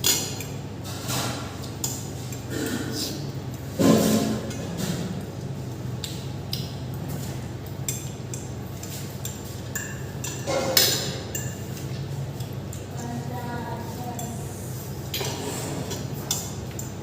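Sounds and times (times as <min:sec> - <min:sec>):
cutlery clinking on plates: 0:07.9 - 0:12.1.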